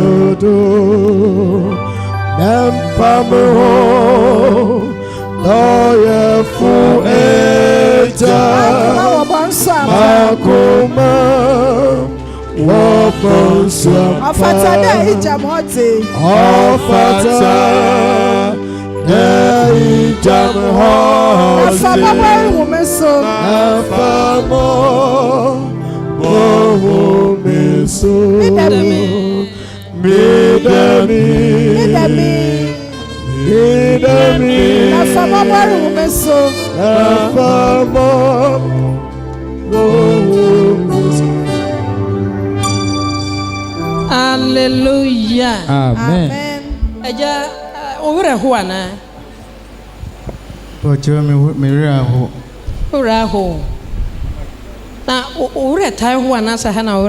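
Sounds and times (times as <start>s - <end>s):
gospel music: 0.0s - 57.0s
sustained keyboard and bass: 0.0s - 57.0s
person singing long wavering notes: 2.4s - 15.0s, 16.4s - 39.0s.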